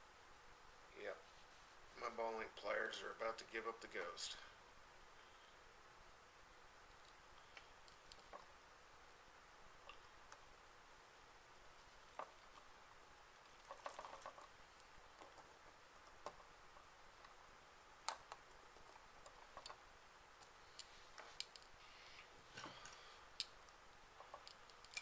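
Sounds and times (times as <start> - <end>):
clicks of small parts and tools: 24.2 - 25.0.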